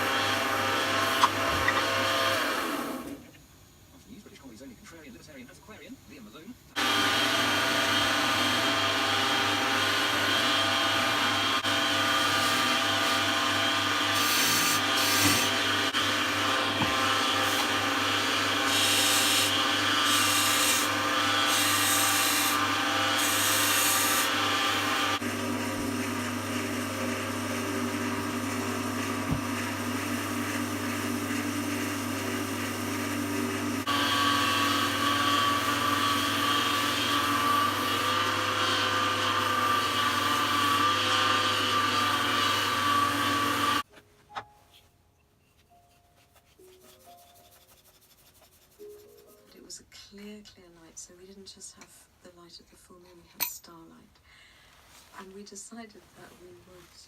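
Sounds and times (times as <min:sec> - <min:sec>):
wood lathe humming: 0:00.0 - 0:03.2, 0:06.8 - 0:43.8
turning tool scraping wood: 0:11.3 - 0:16.0.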